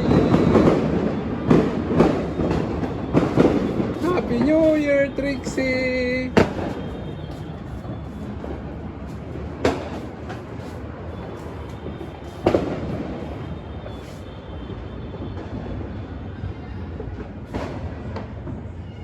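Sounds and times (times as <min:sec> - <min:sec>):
loud firecracker bangs: 0:00.0 - 0:16.0, 0:17.0 - 0:18.8
distant fireworks rumble: 0:00.0 - 0:19.0.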